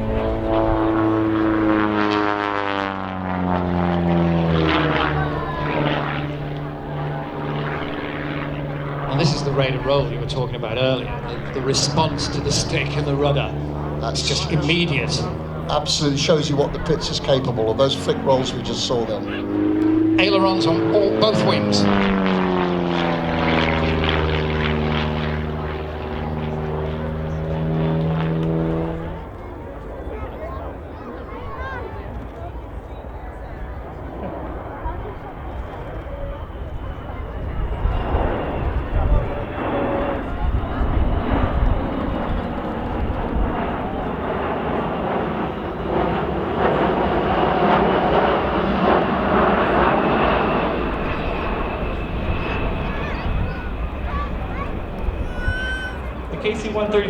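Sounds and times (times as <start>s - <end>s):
propeller plane engine droning: 0.0s - 57.0s
thin steady whine: 4.1s - 29.4s, 48.0s - 57.0s.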